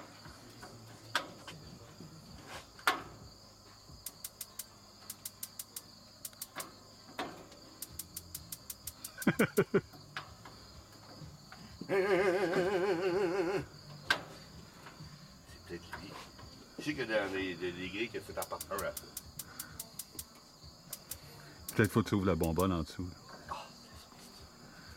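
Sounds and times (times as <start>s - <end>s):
crickets chirring: 0.0s - 24.9s
barbecue igniter clicking: 4.0s - 6.8s, 7.6s - 9.7s, 18.4s - 22.7s.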